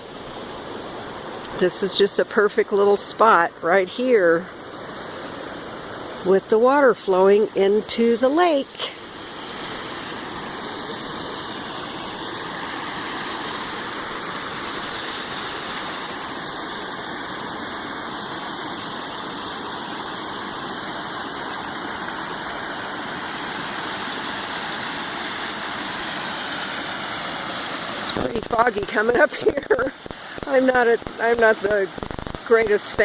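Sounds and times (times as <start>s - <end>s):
small waterfall rushing: 0.0s - 33.0s.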